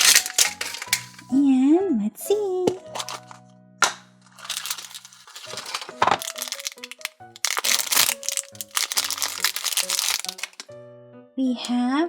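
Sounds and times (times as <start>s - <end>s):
plastic wrapping crinkling and tearing: 0.0s - 1.4s, 2.7s - 10.7s
light background music: 0.0s - 12.0s.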